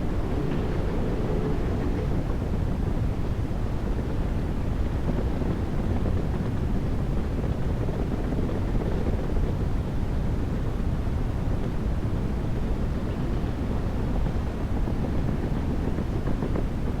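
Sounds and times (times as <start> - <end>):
steady white noise: 0.0 - 17.0.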